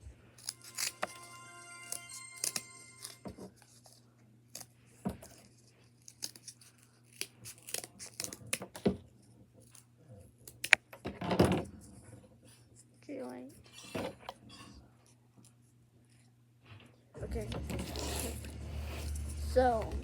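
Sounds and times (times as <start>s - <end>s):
cardboard rustling scrape: 17.4s - 20.0s.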